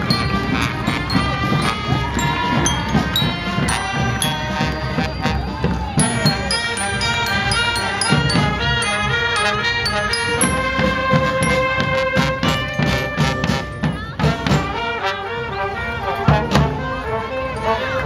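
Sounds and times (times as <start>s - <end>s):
steady drum beat: 0.0s - 14.8s
marching band playing: 0.0s - 18.0s.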